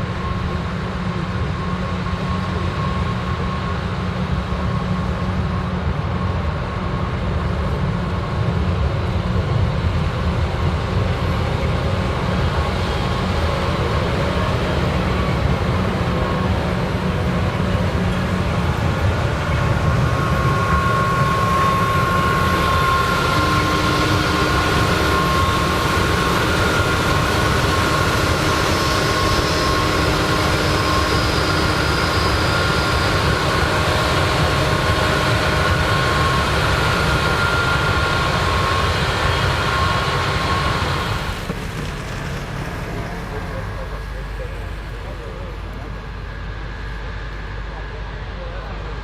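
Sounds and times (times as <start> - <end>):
harvesting machinery engine rumble: 6.6 - 48.9
machinery high whining tones: 10.9 - 48.3.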